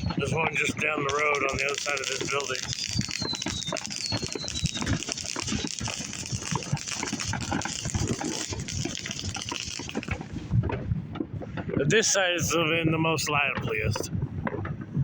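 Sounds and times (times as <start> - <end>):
fireworks crackling and popping: 0.0 - 15.0
falling whistle: 1.3 - 7.2.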